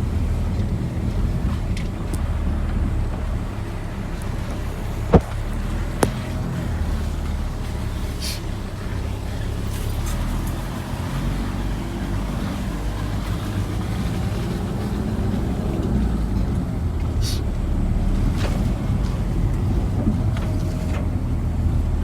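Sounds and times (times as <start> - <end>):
truck engine running: 0.0 - 22.0.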